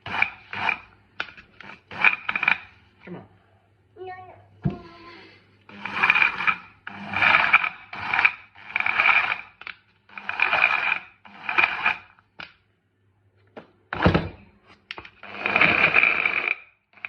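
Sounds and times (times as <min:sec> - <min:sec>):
kitchen appliance whirring: 0:00.0 - 0:03.0, 0:04.6 - 0:12.6, 0:14.9 - 0:17.0.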